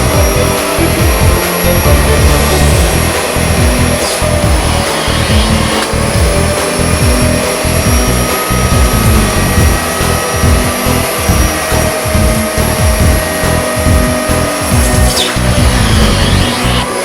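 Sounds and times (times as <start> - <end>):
background music with low beat: 0.0 - 17.0
vacuum cleaner motor whining: 0.0 - 17.0.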